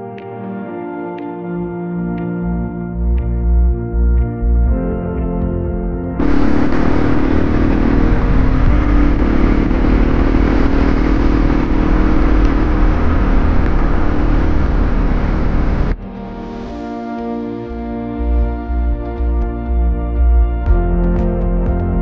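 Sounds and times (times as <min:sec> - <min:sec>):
motorcycle engine running: 0:06.2 - 0:16.0
low rumble: 0:06.2 - 0:17.0
rushing air noise: 0:06.2 - 0:17.0.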